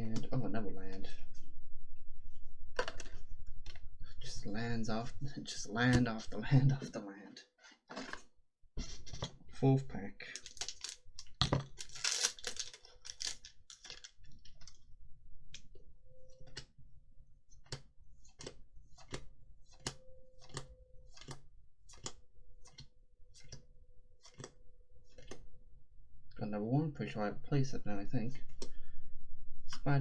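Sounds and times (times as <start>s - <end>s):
cards clicking as flicked: 10.4s - 14.1s
wrapper crinkling: 10.4s - 14.2s.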